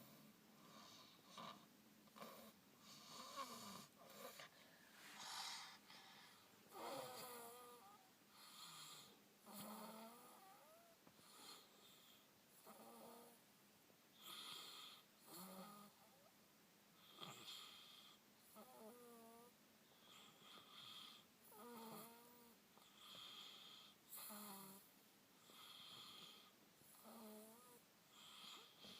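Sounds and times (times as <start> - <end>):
faint snoring with squeaky whistle: 2.2 - 4.3, 6.7 - 11.7, 17.1 - 19.5, 20.1 - 24.8, 25.5 - 28.9.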